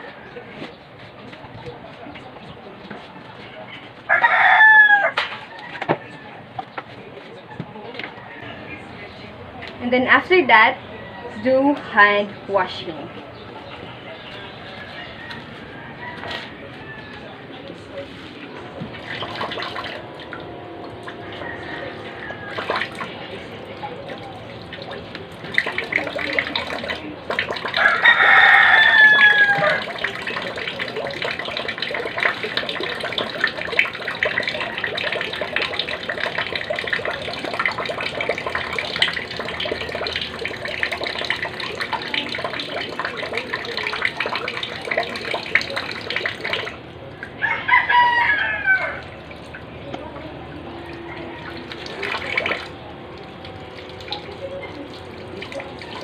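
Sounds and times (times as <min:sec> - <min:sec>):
rooster crowing: 0:04.1 - 0:06.6, 0:08.1 - 0:08.9, 0:10.8 - 0:11.5, 0:14.4 - 0:17.6, 0:19.6 - 0:23.5, 0:27.6 - 0:30.6, 0:47.4 - 0:49.2, 0:50.6 - 0:52.0
tap water running into sink: 0:18.7 - 0:47.4, 0:49.0 - 0:56.0.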